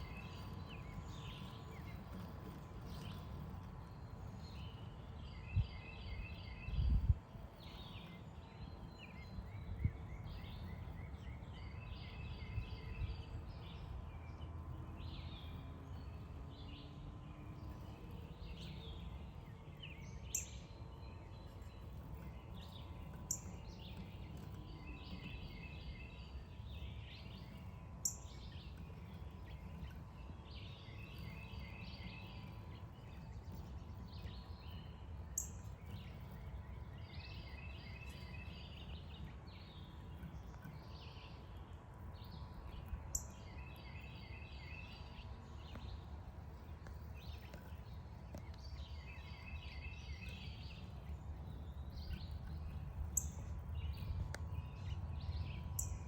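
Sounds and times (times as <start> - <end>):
songbirds singing trills: 0.0 - 56.0
steady low rumble: 17.3 - 56.0.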